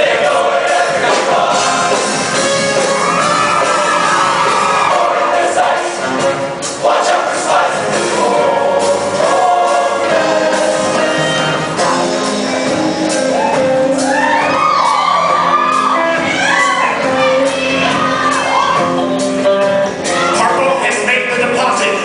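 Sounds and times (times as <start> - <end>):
choir singing with instruments: 0.0 - 22.0.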